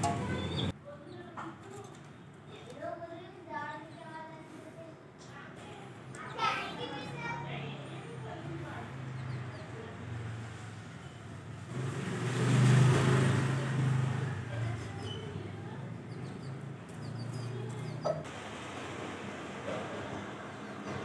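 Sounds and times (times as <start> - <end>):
vehicle passing: 0.0 - 0.7, 6.6 - 21.0.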